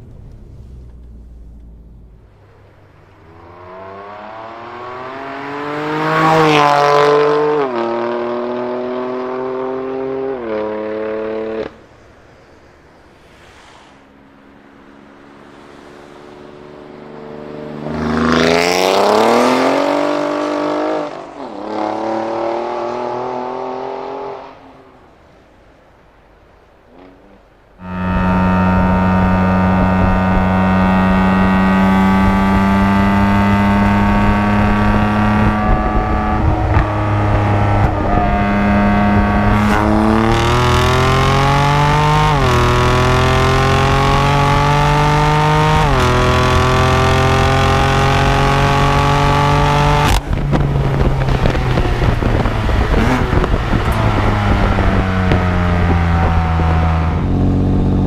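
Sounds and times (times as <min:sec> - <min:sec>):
sports car engine accelerating: 0:00.0 - 0:11.9, 0:27.0 - 0:58.0.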